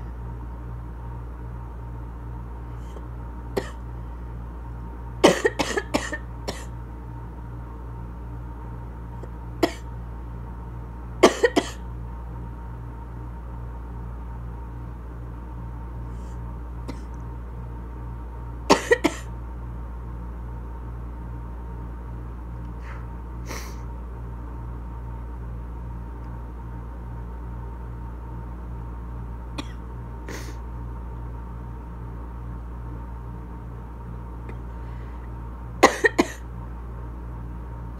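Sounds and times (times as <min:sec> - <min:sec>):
steady low hum: 0:00.0 - 0:37.9
woman coughing: 0:03.6 - 0:03.8, 0:05.2 - 0:06.7, 0:09.6 - 0:09.9, 0:11.2 - 0:11.8, 0:16.9 - 0:17.1, 0:18.7 - 0:19.3, 0:29.6 - 0:29.8, 0:35.8 - 0:36.4.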